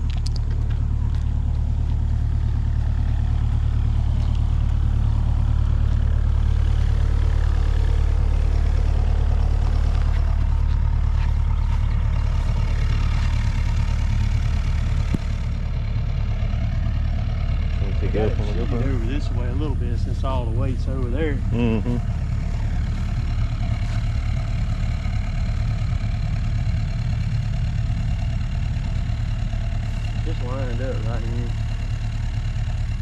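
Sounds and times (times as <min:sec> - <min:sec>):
large engine idling: 0:00.0 - 0:33.0.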